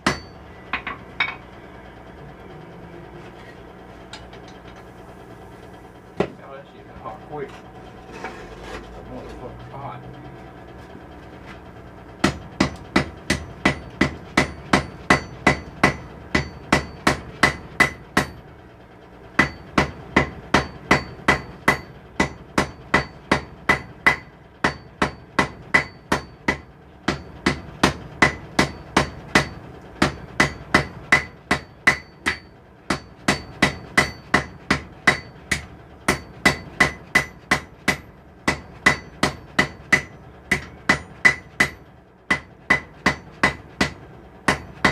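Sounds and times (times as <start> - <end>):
hammer striking steel on anvil: 0.0 - 1.5, 12.2 - 18.4, 19.4 - 44.9.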